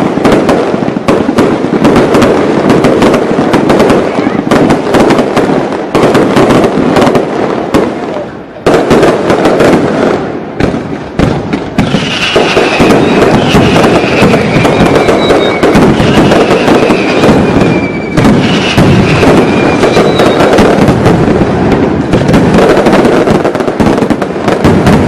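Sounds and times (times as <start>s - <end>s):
fireworks crackling and banging: 0.0s - 25.0s
fireworks whistles falling in pitch: 10.6s - 21.4s.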